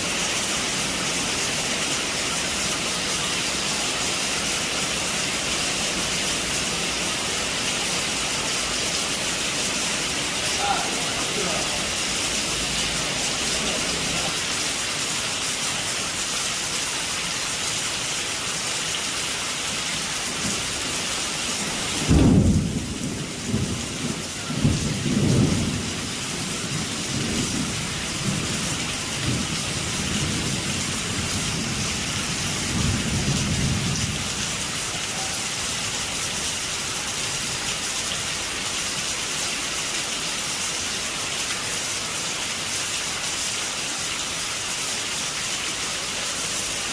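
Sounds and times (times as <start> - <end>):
heavy rain on a roof: 0.0 - 46.9
sharp thunderclap: 21.9 - 23.8
rolling thunder: 21.9 - 31.9.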